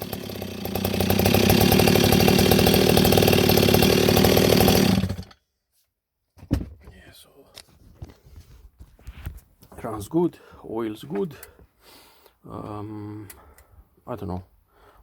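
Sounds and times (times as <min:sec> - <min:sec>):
chainsaw idling and revving: 0:00.0 - 0:05.4.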